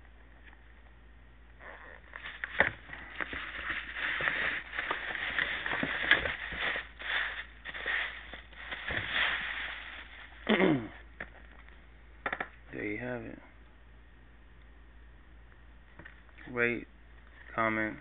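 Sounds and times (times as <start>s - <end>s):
sneakers rustling and rubbing: 1.8s - 10.5s.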